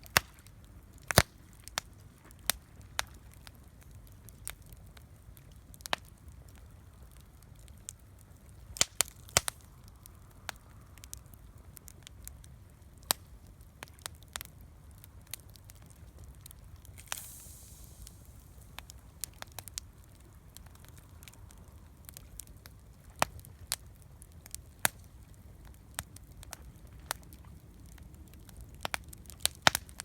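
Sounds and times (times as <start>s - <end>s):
campfire crackling and popping: 0.0s - 30.0s
low steady rumble: 15.8s - 23.0s.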